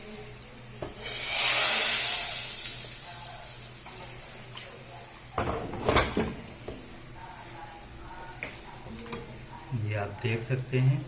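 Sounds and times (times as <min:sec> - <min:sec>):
hot oil sizzling: 0:00.0 - 0:05.4.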